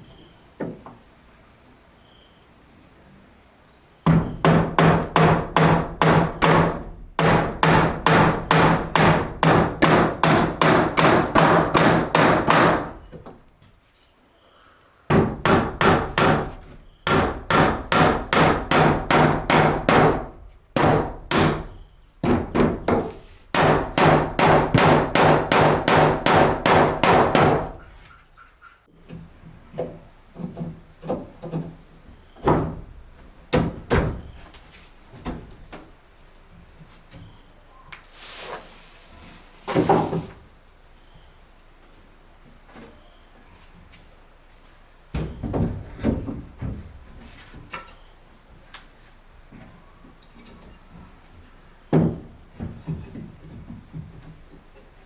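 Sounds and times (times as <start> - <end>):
hammer blows on wood: 4.1 - 13.1, 15.1 - 27.8.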